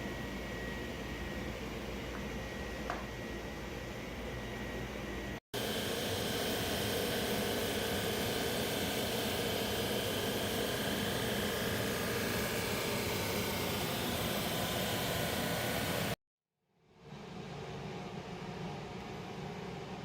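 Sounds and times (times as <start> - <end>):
sander running: 5.6 - 16.2.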